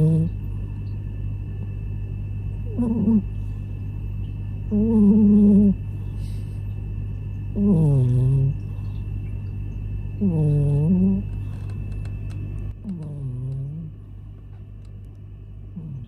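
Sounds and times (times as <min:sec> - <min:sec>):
cat snoring: 0:00.0 - 0:00.4, 0:02.6 - 0:03.3, 0:04.7 - 0:05.8, 0:07.6 - 0:08.6, 0:10.2 - 0:11.3, 0:12.8 - 0:13.9, 0:15.8 - 0:16.0.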